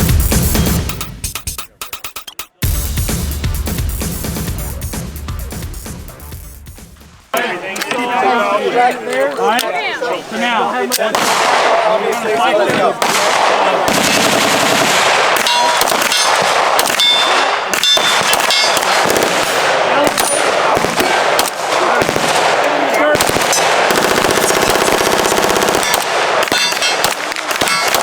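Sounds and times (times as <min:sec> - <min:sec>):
heavy gunfire: 0:11.1 - 0:12.0, 0:12.8 - 0:28.0
automatic gunfire burst: 0:13.0 - 0:28.0.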